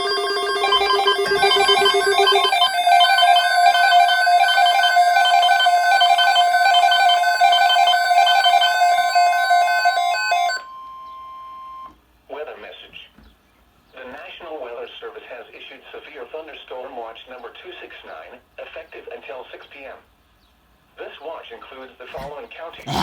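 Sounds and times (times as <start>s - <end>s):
steady electronic tone: 0.0s - 8.1s
electronic chiming melody: 0.0s - 11.8s.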